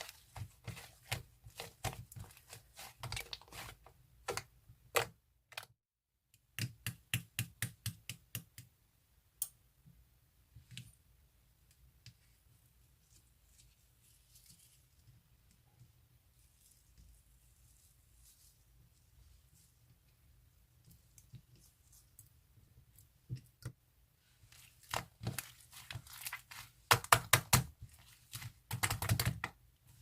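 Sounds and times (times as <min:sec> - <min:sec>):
soft handling sounds: 0:00.0 - 0:04.5, 0:10.5 - 0:26.9.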